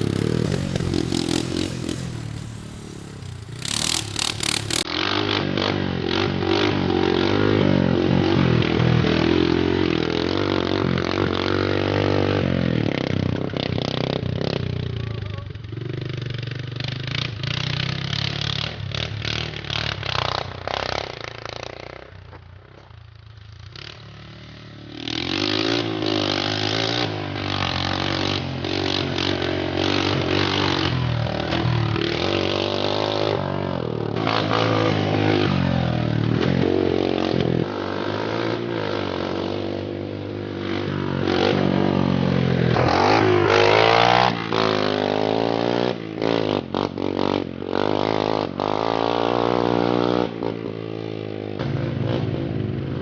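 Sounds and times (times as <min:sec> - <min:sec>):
atv engine revving: 0:00.0 - 0:04.9.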